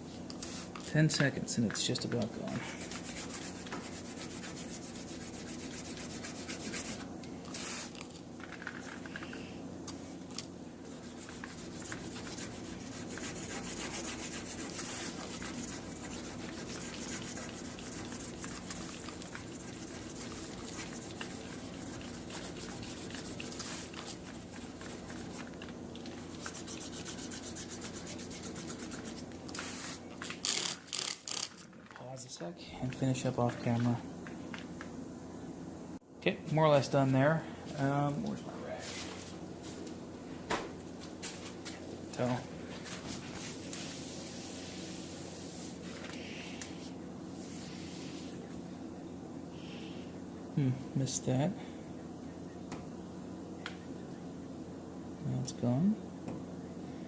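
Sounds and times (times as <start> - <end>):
wet sanding rubbing strokes: 2.7 - 7.0, 10.9 - 25.6, 26.2 - 30.0.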